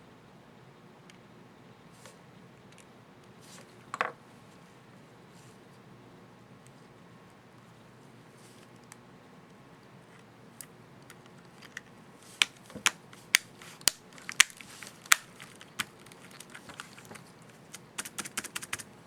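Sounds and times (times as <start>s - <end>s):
laptop keyboard clicks: 11.1s - 18.9s.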